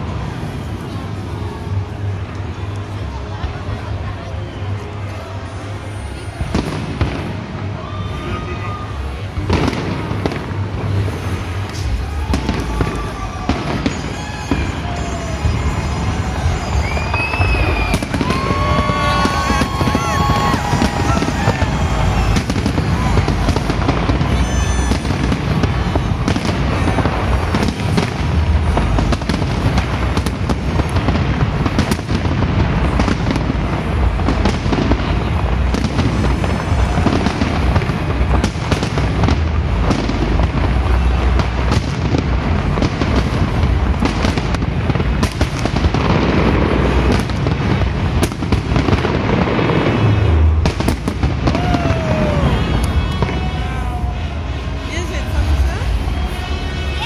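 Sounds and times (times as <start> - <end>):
fireworks bangs and crackles: 0.0 - 57.0
deep fireworks booms: 6.3 - 8.1, 8.9 - 57.0
music: 51.5 - 57.0.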